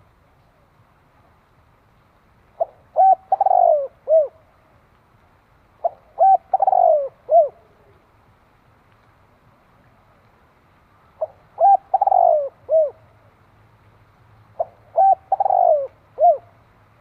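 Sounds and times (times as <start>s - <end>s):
dove cooing: 2.6s - 4.5s, 5.8s - 8.0s, 11.2s - 13.1s, 14.6s - 16.6s.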